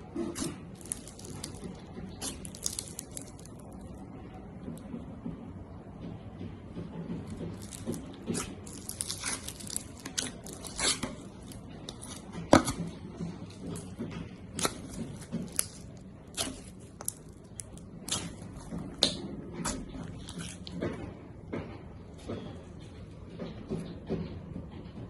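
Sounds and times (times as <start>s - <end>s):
slime popping and crackling: 0.2s - 4.0s, 7.2s - 20.8s.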